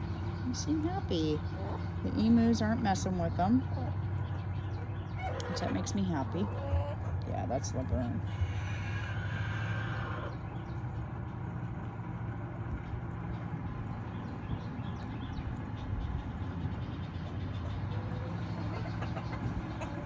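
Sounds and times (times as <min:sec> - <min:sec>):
low engine hum: 0:00.0 - 0:20.0.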